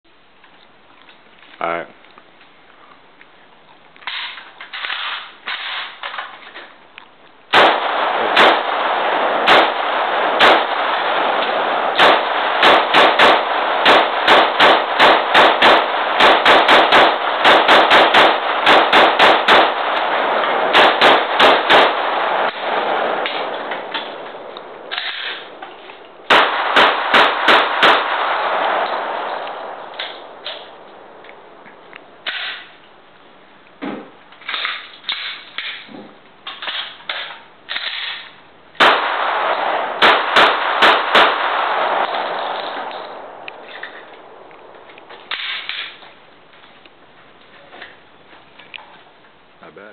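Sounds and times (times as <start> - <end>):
gunshots: 7.5 - 31.2, 36.6 - 44.4.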